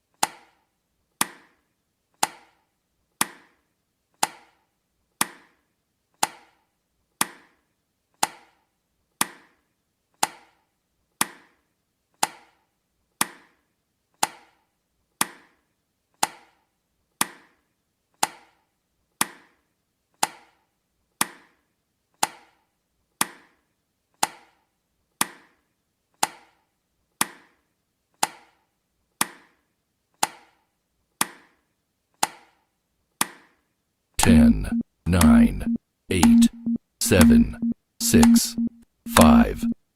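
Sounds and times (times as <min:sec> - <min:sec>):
woody timer ticks: 0:34.2 - 0:39.8.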